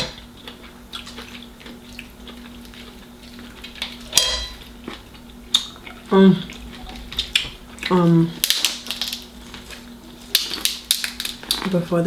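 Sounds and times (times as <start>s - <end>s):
faint steady hum: 0.0s - 12.0s
dishes and cutlery clinking: 4.1s - 4.6s.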